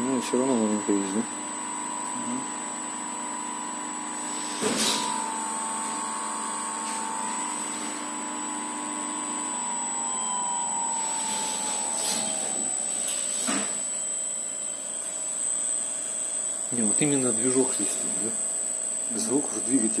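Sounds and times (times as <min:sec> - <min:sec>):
low motor hum: 0:00.0 - 0:15.6
electric motor whistling: 0:00.0 - 0:20.0.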